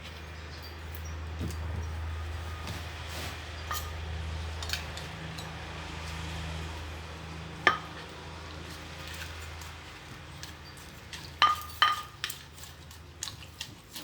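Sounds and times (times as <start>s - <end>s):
kitchen utensils clinking: 3.6s - 5.6s, 7.7s - 14.0s.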